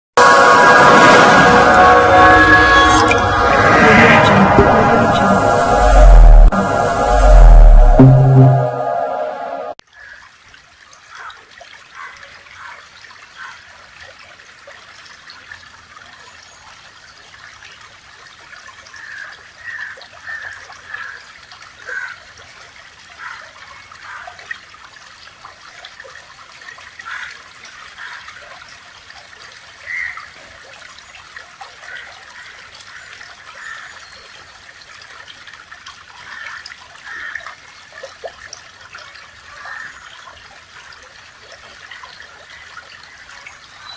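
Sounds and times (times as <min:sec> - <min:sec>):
water splashes and gurgles: 0:09.8 - 0:43.9
water trickling: 0:09.9 - 0:43.9.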